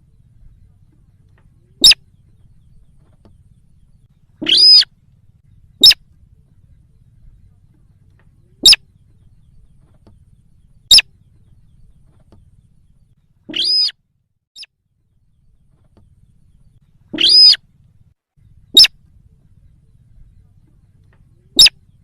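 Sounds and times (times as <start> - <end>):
ringing bird calls: 0.0 - 6.1, 6.7 - 14.0, 15.4 - 17.7, 18.4 - 22.0
bird lure call notes: 1.0 - 4.9, 5.8 - 6.0, 8.2 - 8.9, 9.5 - 11.2, 13.5 - 14.0, 17.1 - 17.6, 18.7 - 19.0, 21.2 - 22.0.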